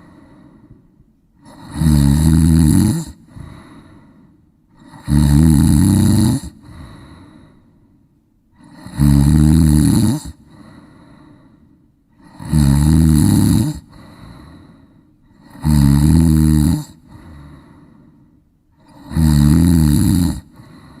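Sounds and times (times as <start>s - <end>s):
soft breaths: 0.0s - 1.7s, 3.2s - 5.0s, 6.5s - 8.8s, 10.3s - 12.4s, 13.8s - 15.4s, 16.9s - 19.1s, 20.4s - 21.0s
ducks snoring: 1.4s - 3.8s, 4.8s - 7.1s, 8.6s - 10.8s, 12.2s - 14.5s, 15.4s - 17.7s, 18.8s - 20.9s.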